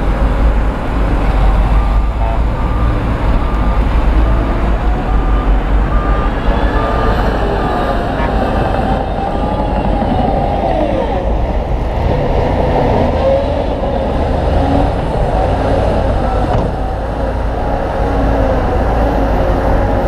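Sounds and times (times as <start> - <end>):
heavy machinery diesel rumble: 0.0 - 20.0
wavering machine whine: 1.4 - 11.7.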